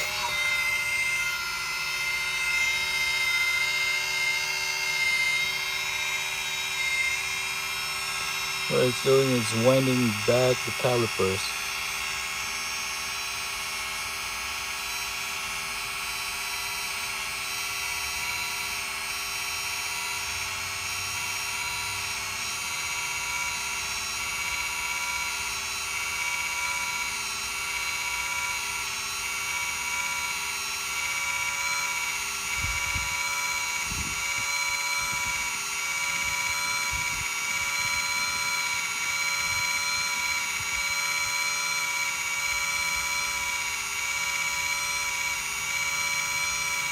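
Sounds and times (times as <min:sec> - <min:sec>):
electric motor whining: 0:00.0 - 0:46.9.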